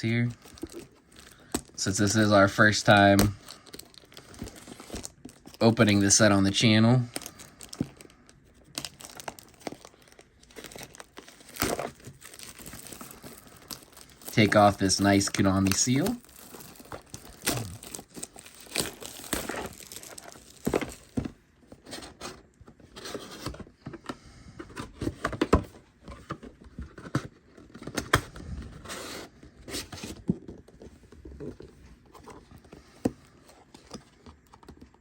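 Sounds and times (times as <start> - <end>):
plastic wrapping tearing and crinkling: 0.1 - 21.2.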